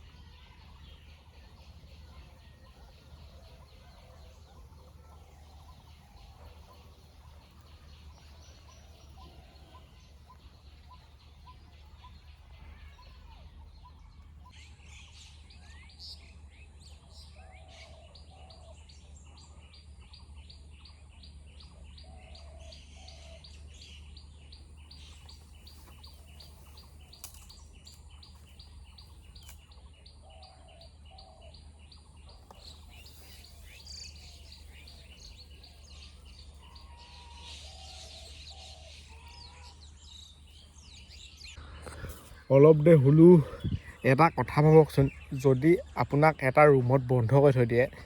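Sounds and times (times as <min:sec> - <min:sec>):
steady low hum: 0:23.7 - 0:48.0.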